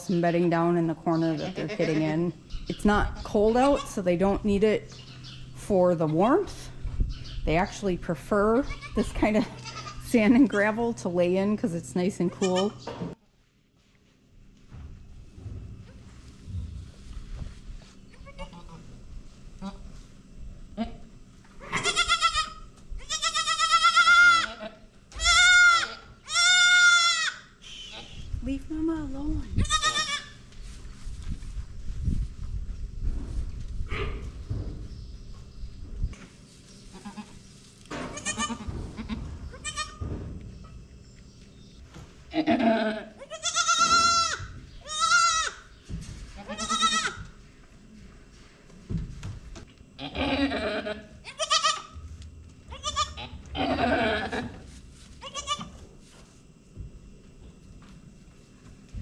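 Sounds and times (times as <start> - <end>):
goat bleating: 1.2 - 2.2, 8.6 - 10.0, 12.2 - 12.9, 18.1 - 18.8, 21.6 - 28.2, 29.6 - 30.4, 36.9 - 37.4, 38.1 - 40.0, 42.3 - 45.7, 46.4 - 47.3, 50.0 - 52.0, 52.7 - 54.6, 55.2 - 55.8.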